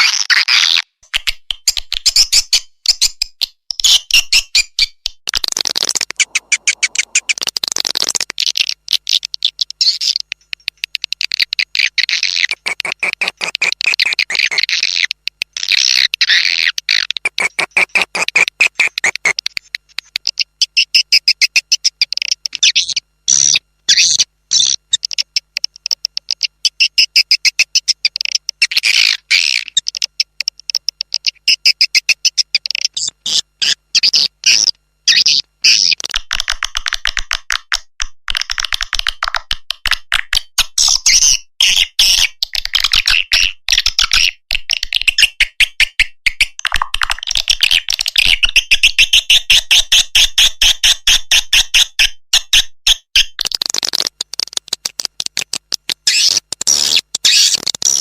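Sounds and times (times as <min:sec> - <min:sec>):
swiftlet twittering chirps and clicks: 0:01.4 - 0:36.1.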